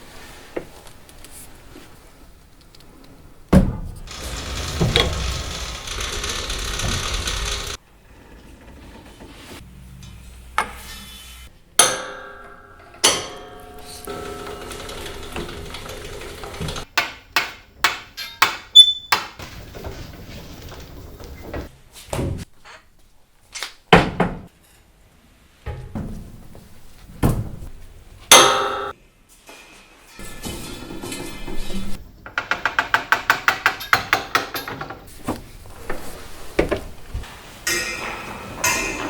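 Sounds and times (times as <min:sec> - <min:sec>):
tools knocking and tapping: 0:32.2 - 0:35.1
ringing hits: 0:37.7 - 0:39.0.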